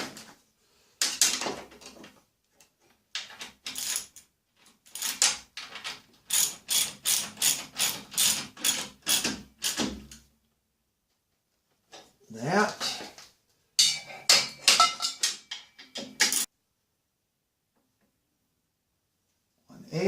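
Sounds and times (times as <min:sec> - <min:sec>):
ratchet clicking strokes: 0:06.3 - 0:09.8.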